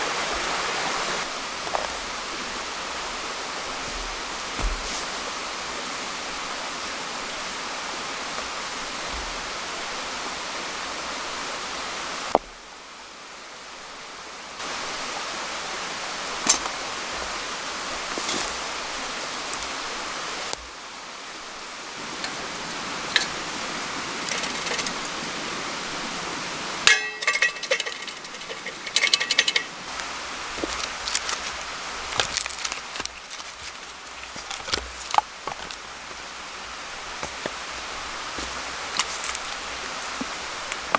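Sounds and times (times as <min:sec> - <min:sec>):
stream rushing: 0:00.0 - 0:40.9
sharp clicks and knocks: 0:26.9 - 0:29.8.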